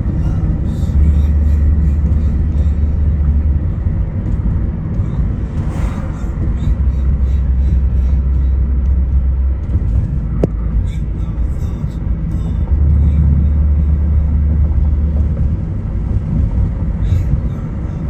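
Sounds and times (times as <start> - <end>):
road traffic rumble: 0.0 - 18.0.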